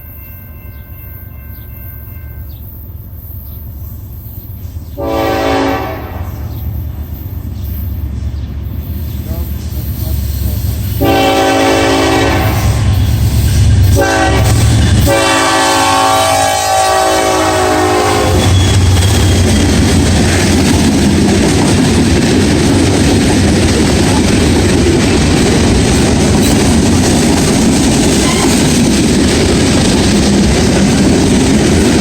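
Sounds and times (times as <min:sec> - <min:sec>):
locomotive air horn blasts: 0:00.0 - 0:02.6, 0:05.0 - 0:06.5, 0:11.0 - 0:13.0, 0:13.9 - 0:19.4
freight cars rumbling on rails: 0:00.0 - 0:32.0.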